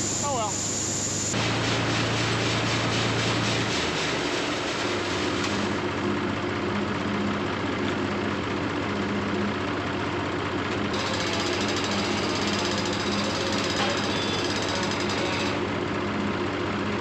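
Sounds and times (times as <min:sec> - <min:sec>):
combine harvester running: 0:00.0 - 0:17.0.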